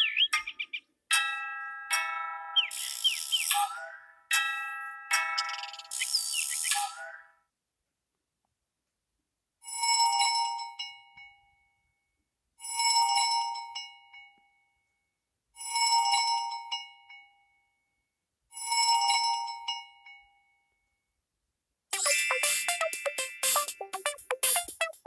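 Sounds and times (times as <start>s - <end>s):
bell-like phone chime: 0.0s - 7.0s, 21.9s - 25.0s.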